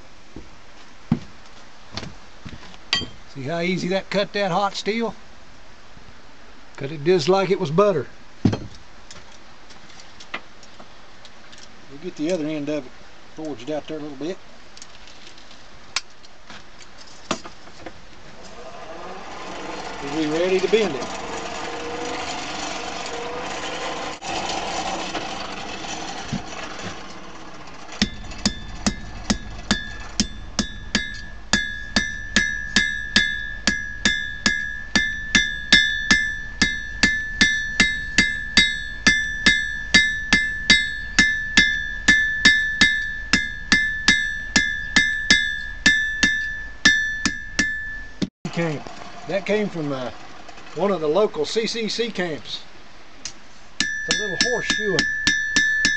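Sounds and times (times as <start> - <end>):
hammer striking steel on anvil: 2.9 - 3.2, 25.6 - 48.3, 53.8 - 55.9
forge blower whirring: 18.2 - 43.8.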